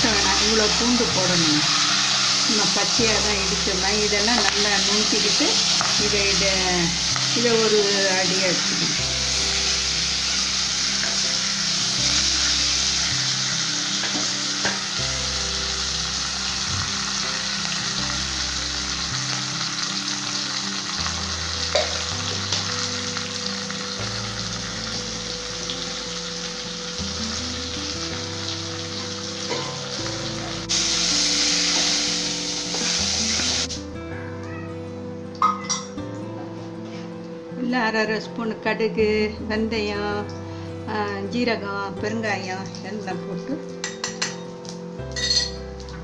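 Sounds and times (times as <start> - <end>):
food sizzling in hot oil: 0.0 - 34.0
soft background tune: 0.0 - 46.0.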